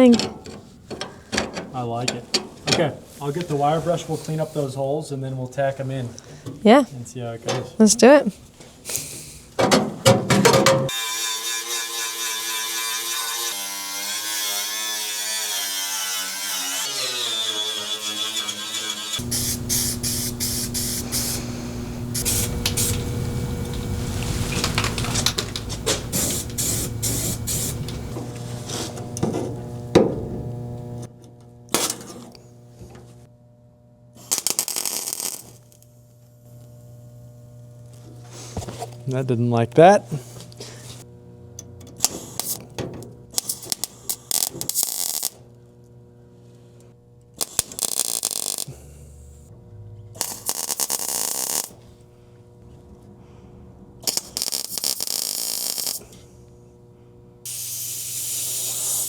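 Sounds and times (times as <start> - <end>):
harsh hiss bursts: 19.2 - 24.7, 26.0 - 27.9, 54.0 - 56.0, 57.5 - 59.0
welder arc crackling: 19.2 - 28.6, 34.2 - 38.0, 42.0 - 42.6, 43.3 - 45.4, 47.4 - 48.7, 50.2 - 51.8, 54.0 - 56.1
steady electrical hum: 19.2 - 59.0.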